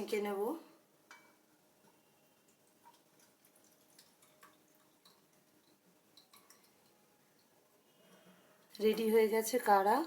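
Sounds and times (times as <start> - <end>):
liquid dripping through strainer: 1.1 - 9.1.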